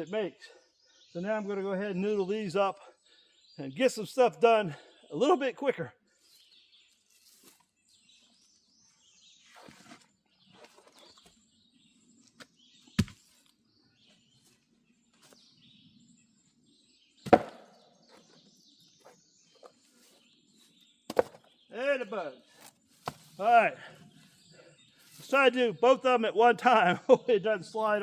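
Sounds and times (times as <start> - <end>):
birds chirping faintly: 0.0 - 28.0
sharp knocks: 17.3 - 17.8.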